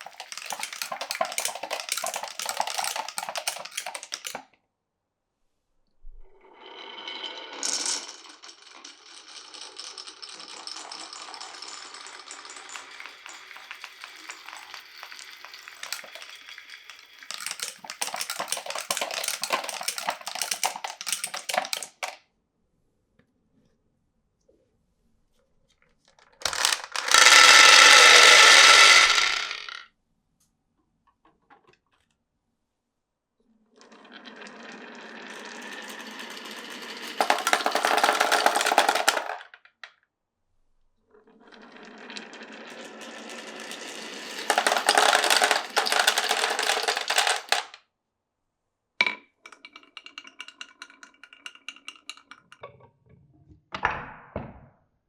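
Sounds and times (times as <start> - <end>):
marbles rolling on a marble run: 0.0 - 4.4, 6.6 - 22.2, 26.4 - 29.8, 33.8 - 39.6, 41.4 - 47.8
knock: 53.8 - 54.8.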